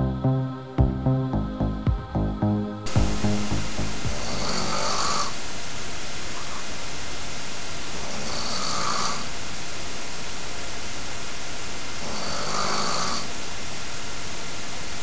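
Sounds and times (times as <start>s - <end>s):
steady hiss: 2.8s - 15.0s
man snoring: 3.8s - 5.4s, 8.1s - 9.3s, 12.0s - 13.3s.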